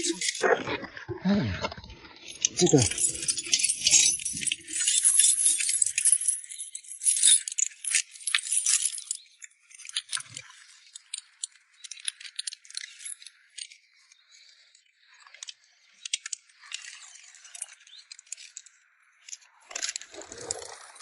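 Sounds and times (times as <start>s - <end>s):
metal chains rattling and clinking: 0.0s - 0.6s, 2.2s - 13.3s, 19.8s - 21.0s.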